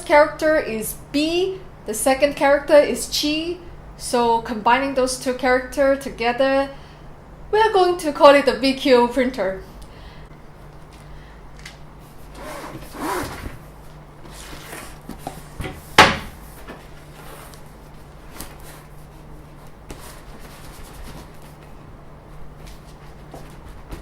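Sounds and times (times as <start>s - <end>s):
sharp knock: 16.0s - 16.4s.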